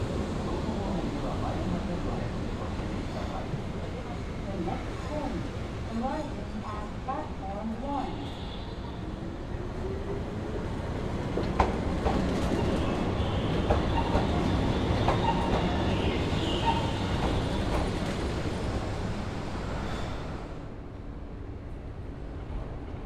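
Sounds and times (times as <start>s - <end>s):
train wheels clacking over rail joints: 16.5s - 18.4s.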